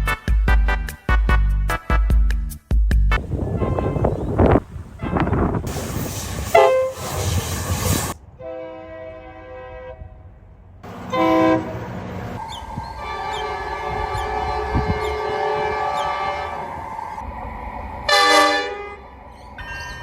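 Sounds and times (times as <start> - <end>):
locomotive air horn: 3.1 - 7.4, 8.4 - 17.2, 18.1 - 19.2
moving train rumble and hiss: 3.2 - 20.0.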